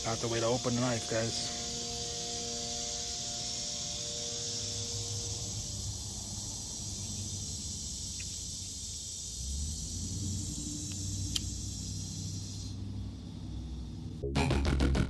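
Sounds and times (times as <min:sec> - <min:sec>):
insects chirring: 0:00.0 - 0:14.2.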